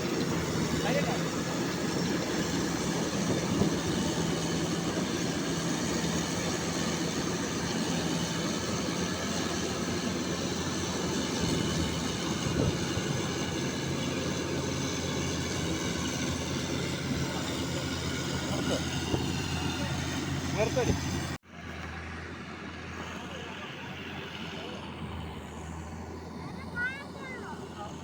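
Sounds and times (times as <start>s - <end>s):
diesel engine humming: 0.0s - 28.0s.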